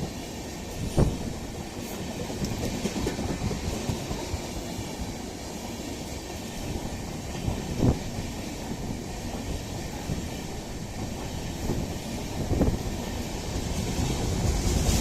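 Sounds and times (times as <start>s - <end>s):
train wheels knocking over rails: 2.0s - 4.5s.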